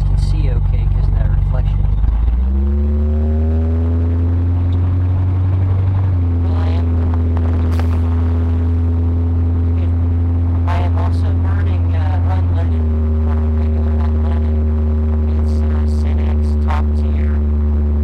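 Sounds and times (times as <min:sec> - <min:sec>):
car engine running steadily: 0:00.0 - 0:18.0.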